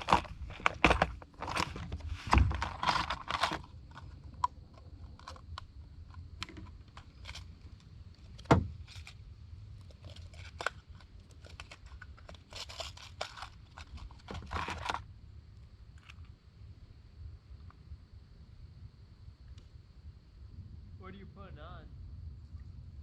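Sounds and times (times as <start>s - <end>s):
rustling: 0.0s - 15.1s.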